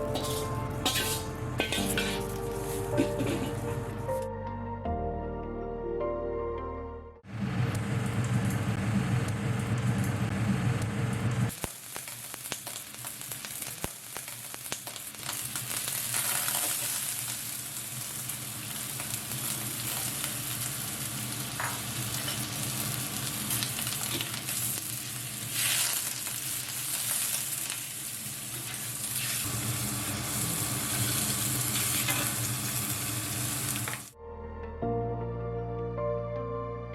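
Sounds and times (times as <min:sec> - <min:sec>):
food sizzling in a wok: 0:00.0 - 0:04.0, 0:11.5 - 0:34.2.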